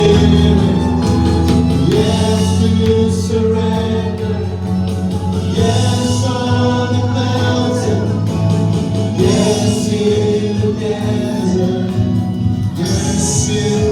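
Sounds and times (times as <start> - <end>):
live worship band playing: 0.0 - 13.9
singing voices: 0.0 - 13.9.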